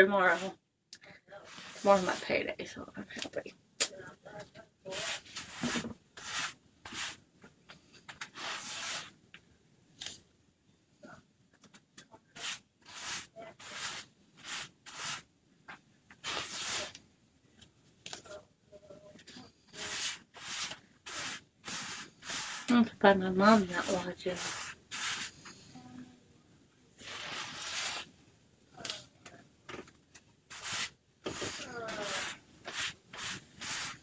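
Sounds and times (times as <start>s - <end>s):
stencil rubbing on cloth: 0.2s - 0.5s, 1.4s - 2.3s, 4.9s - 7.2s, 8.1s - 9.1s, 12.2s - 17.0s, 19.4s - 25.7s, 27.0s - 28.1s, 30.5s - 34.0s.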